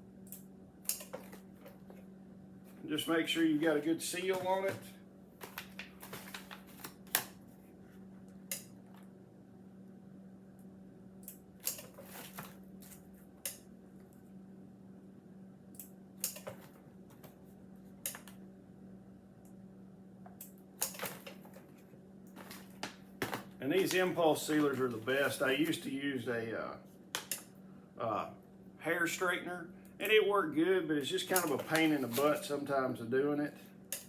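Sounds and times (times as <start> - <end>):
steady low hum: 0.0 - 34.0
heat sealer clicks: 0.3 - 1.2
plastic bags crinkling: 3.2 - 7.2, 22.3 - 25.8, 31.3 - 32.5.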